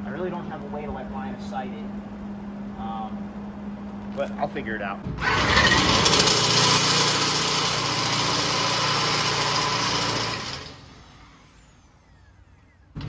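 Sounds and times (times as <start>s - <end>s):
power tool motor winding down: 5.1s - 12.8s.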